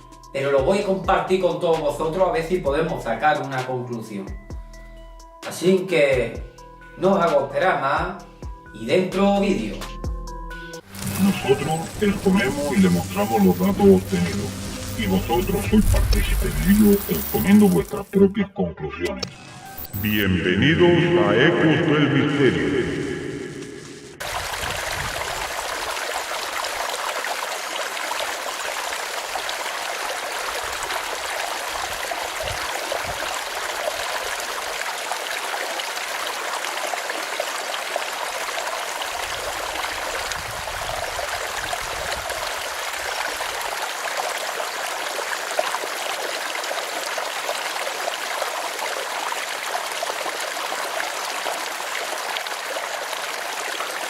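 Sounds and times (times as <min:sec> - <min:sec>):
stream running over rocks: 0:10.8 - 0:18.1, 0:24.2 - 0:54.0.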